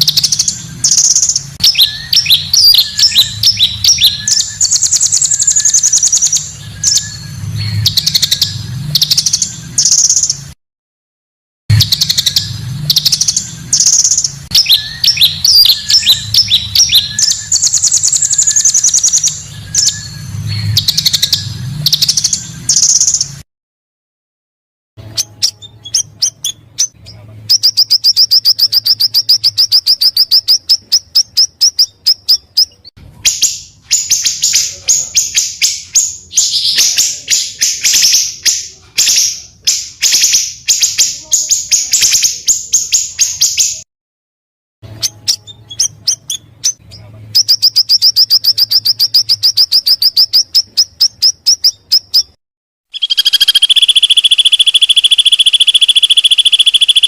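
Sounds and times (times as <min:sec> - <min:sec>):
songbirds trilling and chattering: 0:00.0 - 0:10.6, 0:11.7 - 0:23.4, 0:25.0 - 0:43.8, 0:44.9 - 0:52.4, 0:53.0 - 0:57.0
shrill insect-like trill: 0:53.0 - 0:57.0.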